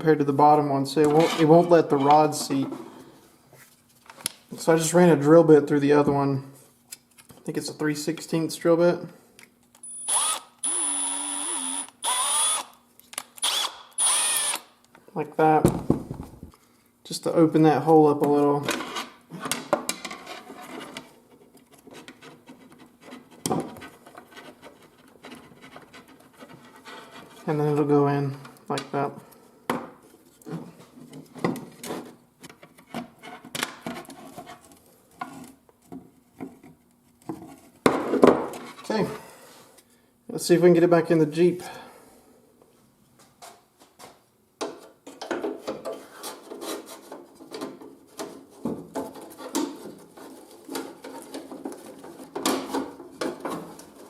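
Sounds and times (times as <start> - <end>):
electric drill bursts: 9.8 - 12.8, 13.4 - 14.7.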